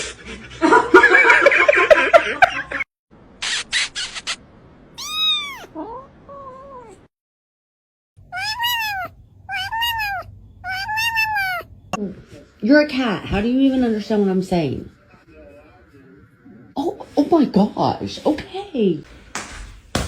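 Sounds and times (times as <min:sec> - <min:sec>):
cat meowing: 0:05.0 - 0:07.1, 0:08.2 - 0:11.7.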